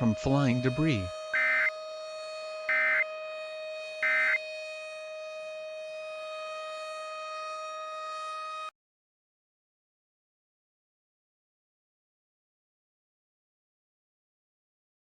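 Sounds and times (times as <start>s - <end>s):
droning alert tone: 1.4s - 1.7s, 2.7s - 3.0s, 4.0s - 4.4s
harsh digital squawks: 1.4s - 1.7s, 2.7s - 3.0s, 4.0s - 4.4s.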